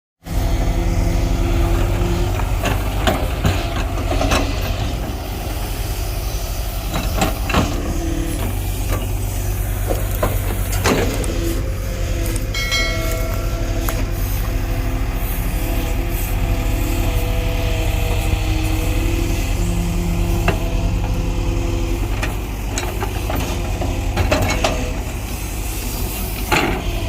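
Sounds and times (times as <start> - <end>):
heavy diesel machinery running: 0.2 - 27.0
high-pitched squeal: 11.0 - 17.1.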